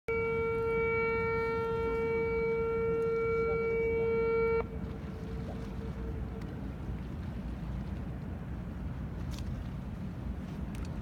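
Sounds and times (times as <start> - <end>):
boat horn blast: 0.1 - 7.1
low steady rumble: 0.1 - 11.0.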